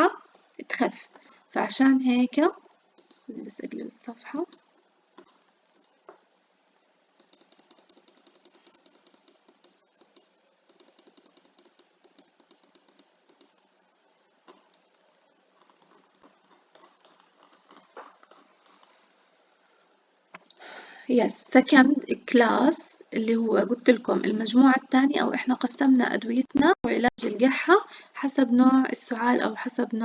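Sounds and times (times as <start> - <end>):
faint computer mouse clicks: 3.0 - 3.3, 4.3 - 5.4, 7.2 - 13.6.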